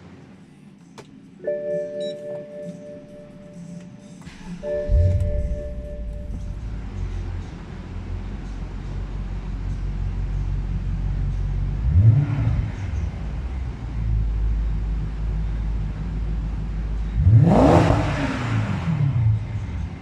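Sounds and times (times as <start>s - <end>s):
car engine idling: 0.0s - 20.0s
engine revving: 4.2s - 20.0s.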